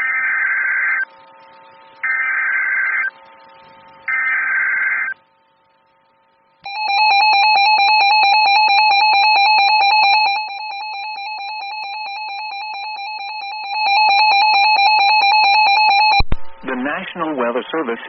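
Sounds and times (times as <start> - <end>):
buzzy digital header tones: 0.0 - 17.6
loud steady alert tone: 6.6 - 16.6.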